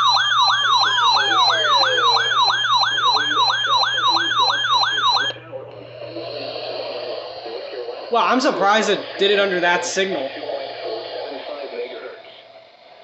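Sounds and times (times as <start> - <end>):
siren wail: 0.0 - 5.4
siren yelping: 0.0 - 5.4
faint radio hiss: 3.2 - 13.0.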